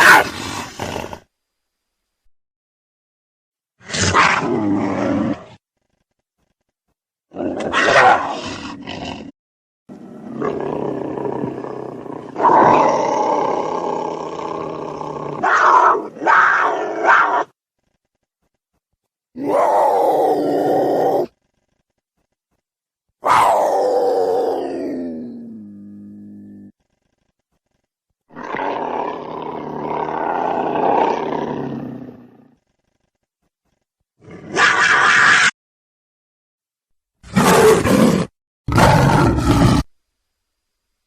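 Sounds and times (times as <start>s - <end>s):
big cat roaring: 3.8s - 5.6s, 7.3s - 9.3s, 9.9s - 17.5s, 19.4s - 21.4s, 23.2s - 26.7s, 28.3s - 32.6s, 37.3s - 39.9s.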